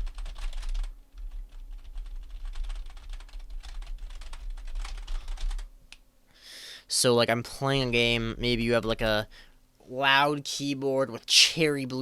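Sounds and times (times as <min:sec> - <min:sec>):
fast typing on keyboard: 0:00.0 - 0:05.7.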